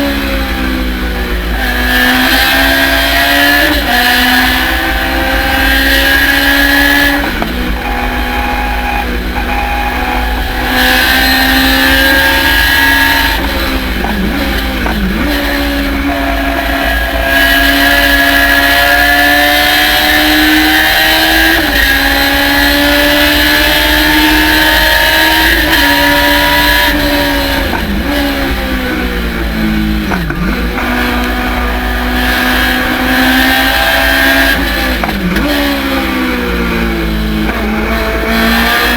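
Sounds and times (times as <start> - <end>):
race car engine at high revs: 0.0 - 38.9.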